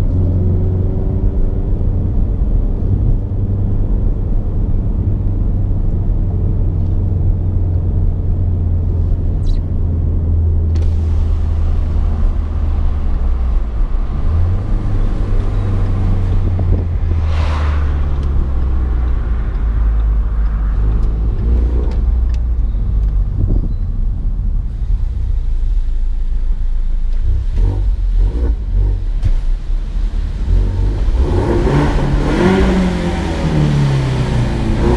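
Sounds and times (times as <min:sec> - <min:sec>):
brief rushing sound: 0:16.5 - 0:19.5.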